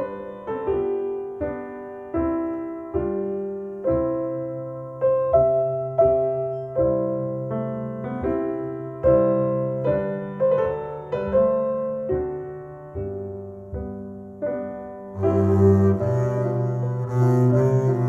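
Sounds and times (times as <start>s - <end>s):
slow piano music over loudspeakers: 0.0s - 18.0s
held low bass note: 15.2s - 18.0s.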